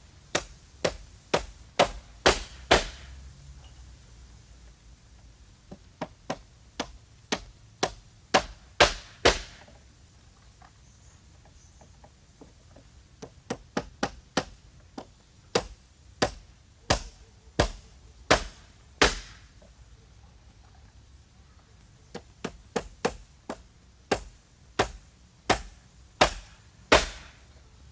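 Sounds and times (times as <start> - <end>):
sharp knocks or blows: 0.3 - 3.1, 15.5 - 19.5, 22.4 - 27.4.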